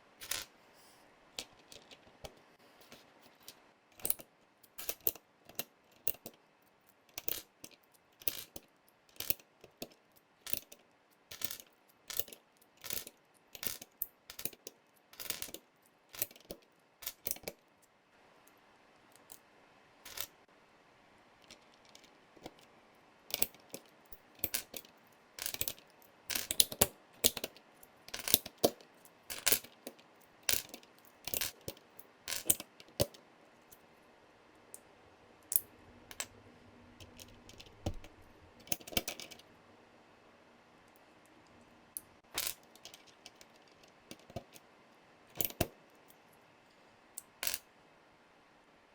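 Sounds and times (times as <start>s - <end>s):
plastic keycaps clacking: 37.0s - 39.4s.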